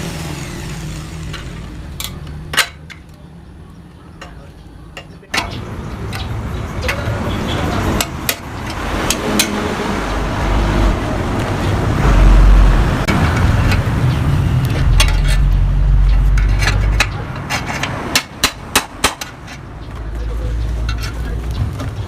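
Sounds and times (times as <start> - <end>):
low rumble: 10.0 - 17.3.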